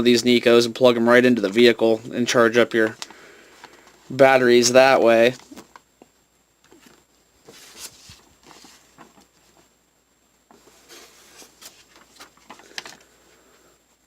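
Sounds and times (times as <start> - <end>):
soft rustling: 5.2 - 9.8, 10.4 - 13.8.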